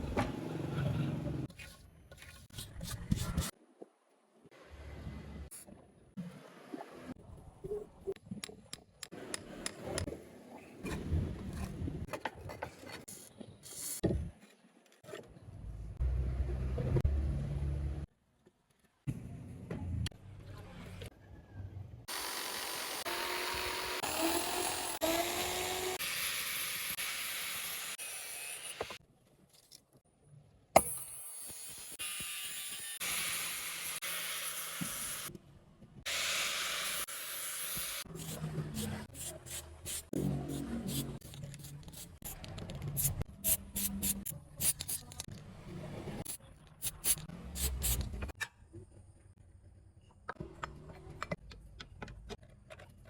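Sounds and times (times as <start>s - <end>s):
power tool grinding metal: 22.1s - 29.0s.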